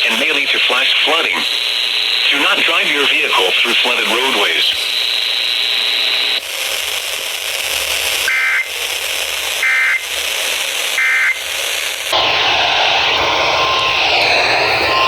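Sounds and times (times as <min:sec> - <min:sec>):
two-tone warbling data bursts: 0:00.0 - 0:04.8
radio static hiss: 0:00.0 - 0:07.1, 0:08.0 - 0:15.0.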